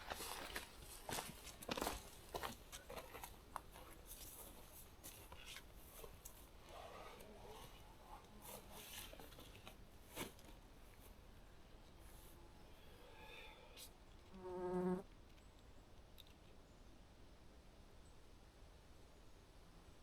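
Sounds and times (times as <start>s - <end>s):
faint rustling of clothing: 0.0s - 12.7s.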